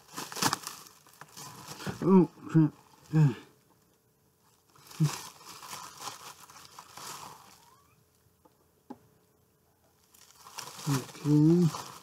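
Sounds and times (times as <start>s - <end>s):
bubble wrap crinkling: 0.0s - 3.3s, 4.4s - 8.0s, 10.0s - 12.0s
short vocal grunt: 1.9s - 3.5s.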